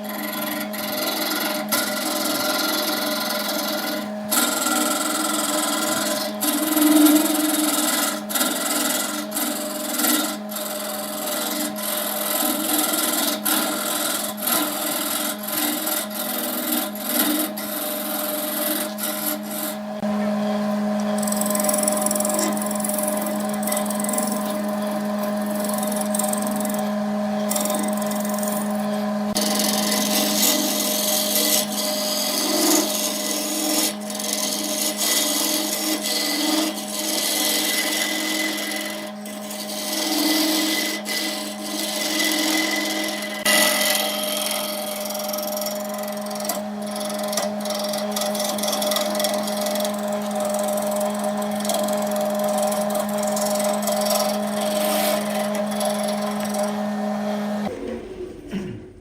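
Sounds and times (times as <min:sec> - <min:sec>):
lathe tool scraping wood: 0:00.0 - 0:58.8
wood lathe motor hum: 0:00.0 - 0:58.9.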